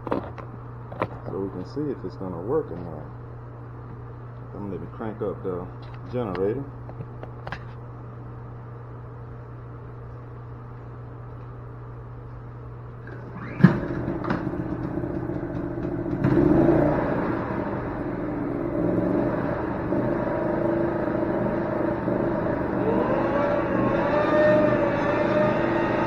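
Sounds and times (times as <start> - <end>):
generator engine running: 13.0 - 26.0
generator engine bang: 13.4 - 18.0.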